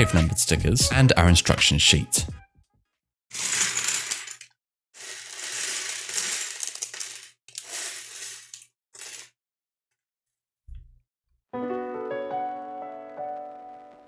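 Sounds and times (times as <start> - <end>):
plastic pieces clattering: 3.3 - 9.3.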